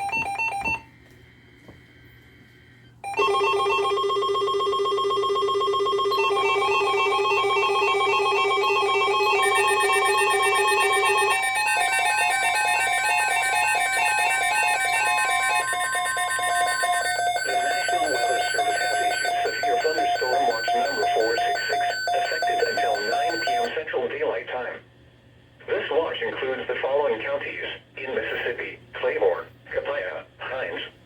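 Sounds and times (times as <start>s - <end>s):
steady alert tones: 3.0s - 23.7s.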